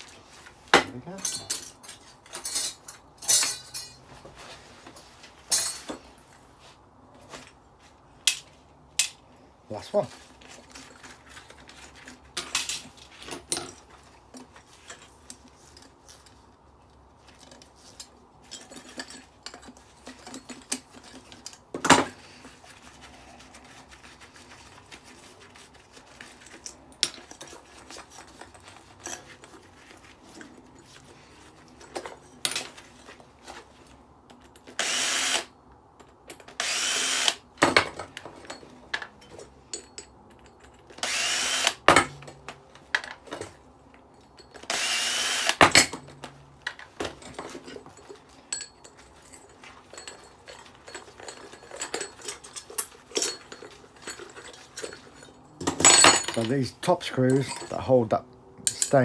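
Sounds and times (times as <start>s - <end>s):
metal parts clinking: 0.9s - 4.1s, 5.5s - 6.0s, 10.4s - 16.4s, 17.3s - 22.2s, 45.6s - 57.9s, 58.6s - 59.0s
power drill running: 34.8s - 35.5s, 36.6s - 37.4s, 41.0s - 41.8s, 44.7s - 45.7s.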